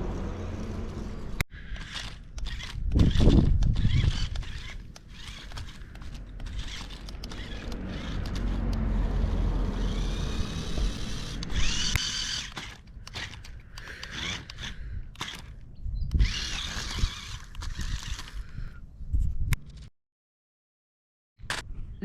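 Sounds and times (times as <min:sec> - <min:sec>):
toy car motor whining: 0:00.6 - 0:18.7.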